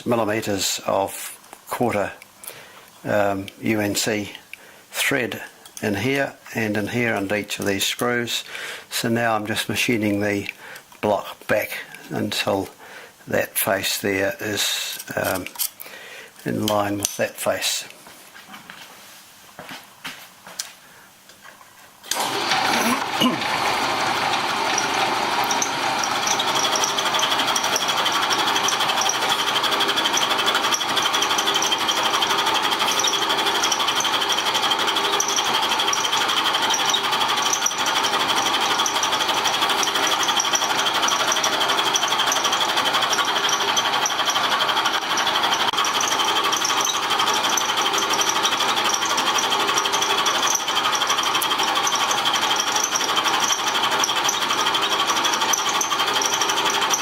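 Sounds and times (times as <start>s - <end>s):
milling cutter machining metal: 22.1s - 57.0s.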